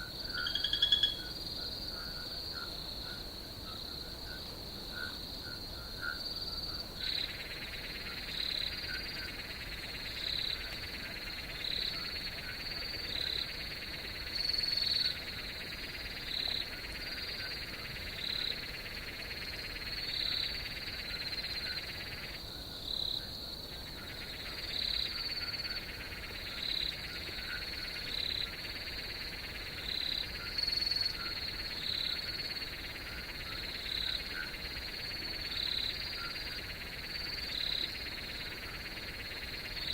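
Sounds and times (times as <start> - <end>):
frog calls: 0.0 - 39.9.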